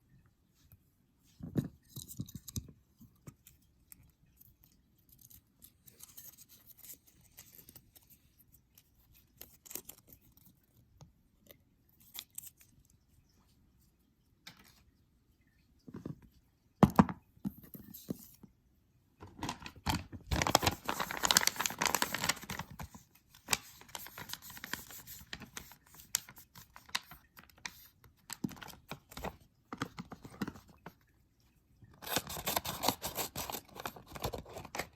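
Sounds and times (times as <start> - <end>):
plastic tearing: 19.3 - 27.7
plastic bag crinkling: 19.3 - 29.4.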